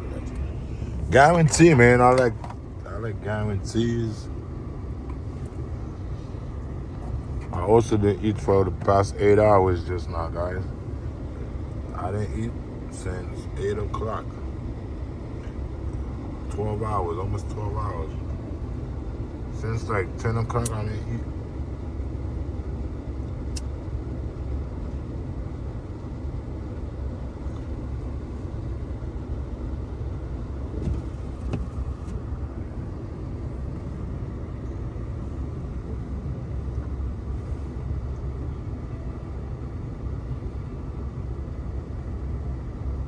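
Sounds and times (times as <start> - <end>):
car engine idling: 0.0 - 43.0.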